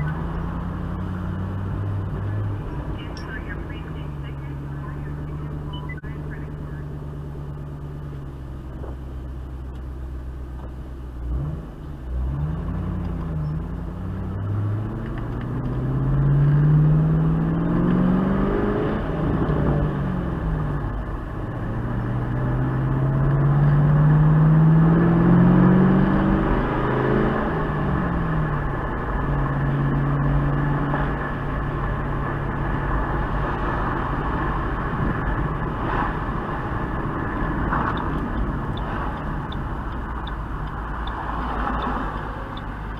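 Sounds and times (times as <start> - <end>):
car engine revving: 0.0 - 42.9
exhaust pops and crackles: 34.8 - 42.9.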